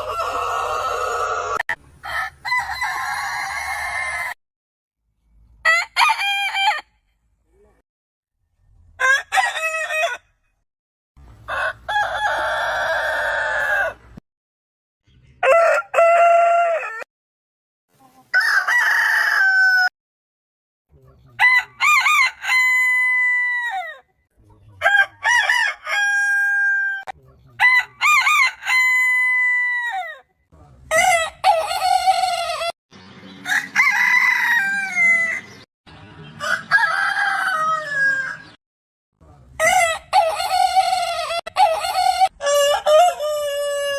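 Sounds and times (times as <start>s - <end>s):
roosters crowing: 0.0s - 4.4s, 5.6s - 7.0s, 9.0s - 10.4s, 11.4s - 14.2s, 15.4s - 17.1s, 18.3s - 19.9s, 21.4s - 24.1s, 24.8s - 30.3s, 30.9s - 35.7s, 36.3s - 38.6s, 39.6s - 43.9s.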